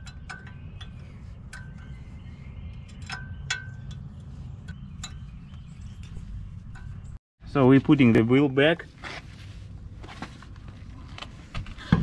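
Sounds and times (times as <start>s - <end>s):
wrench clinking on metal: 0.0s - 2.0s, 2.8s - 6.0s.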